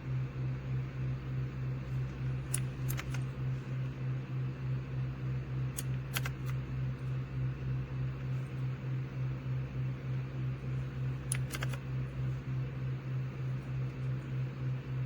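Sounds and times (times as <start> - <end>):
pulsing mechanical hum: 0.0 - 15.0
sharp clicks: 2.1 - 3.3, 5.8 - 6.6, 11.2 - 11.9.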